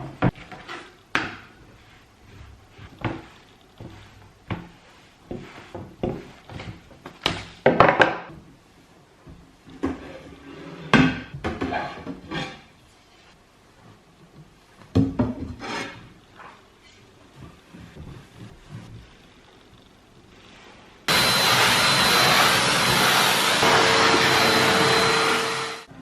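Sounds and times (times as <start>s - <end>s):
scraping and rubbing: 0.3s - 7.6s, 15.5s - 25.8s
objects knocking and clattering: 5.3s - 8.4s.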